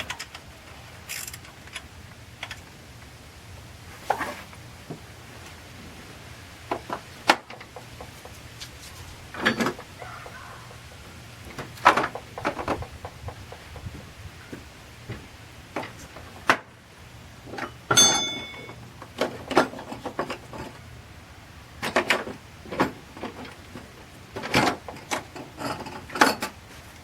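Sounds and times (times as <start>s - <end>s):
hand tools clinking against metal: 17.6s - 18.8s.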